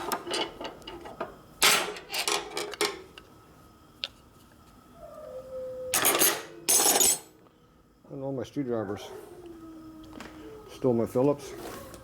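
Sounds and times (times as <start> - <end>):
tools clattering: 0.0 - 3.0, 6.0 - 7.3
hand tools rattling and scraping: 6.0 - 7.3.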